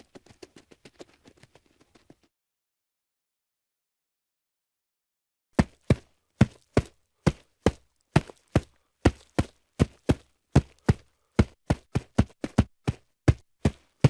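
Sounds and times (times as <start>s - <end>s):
hooves clip-clopping on hard ground: 0.0s - 2.3s, 5.6s - 14.0s.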